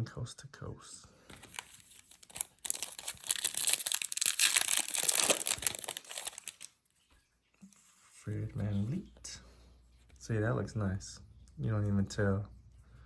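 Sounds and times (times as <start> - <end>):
foil wrapper tearing and crinkling: 1.4 - 6.7.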